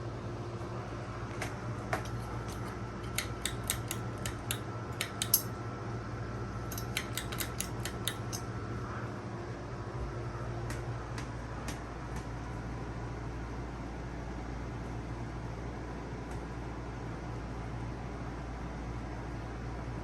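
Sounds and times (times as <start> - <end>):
ceiling fan humming: 0.0 - 20.0
sharp metallic clicks: 2.0 - 5.5, 6.7 - 8.4.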